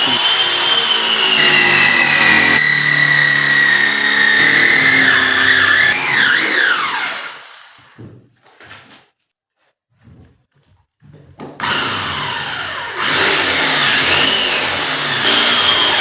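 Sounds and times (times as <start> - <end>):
blade shaving wooden stick: 0.0 - 7.4, 13.0 - 16.0
electric drill running: 0.0 - 7.8, 11.6 - 16.0.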